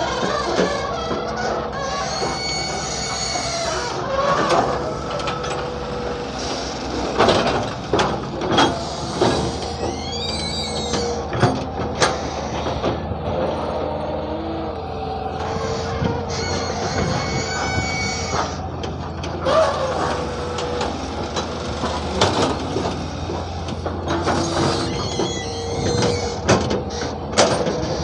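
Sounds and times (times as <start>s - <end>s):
excavator diesel engine running: 0.0s - 28.0s
high squeal: 1.5s - 7.0s, 8.8s - 11.3s, 13.6s - 18.7s, 24.3s - 27.2s.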